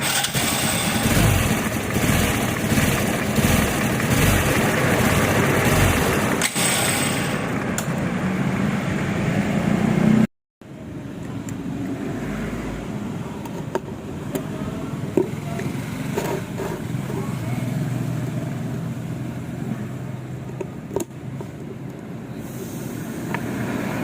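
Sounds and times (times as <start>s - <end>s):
motorcycle engine running: 0.0s - 7.8s.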